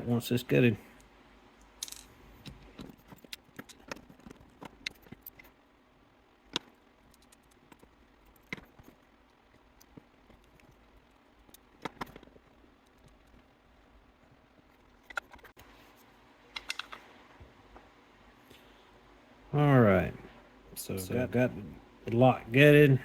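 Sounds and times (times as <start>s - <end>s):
small metallic clicks of lock parts: 16.6s - 17.0s.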